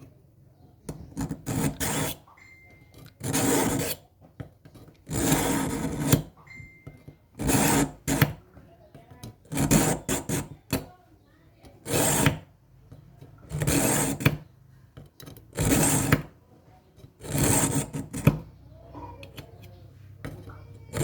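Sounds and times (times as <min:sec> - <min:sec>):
metal file rasping strokes: 0:01.2 - 0:02.2, 0:03.2 - 0:04.0, 0:04.8 - 0:06.3, 0:07.4 - 0:08.3, 0:09.5 - 0:10.5, 0:11.8 - 0:12.4, 0:13.5 - 0:14.4, 0:15.5 - 0:16.3, 0:17.0 - 0:18.4.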